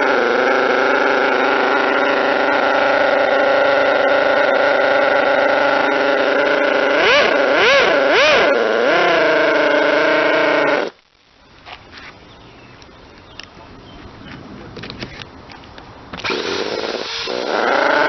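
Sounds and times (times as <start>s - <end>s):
model engine running and revving: 0.0s - 10.9s, 16.2s - 18.0s.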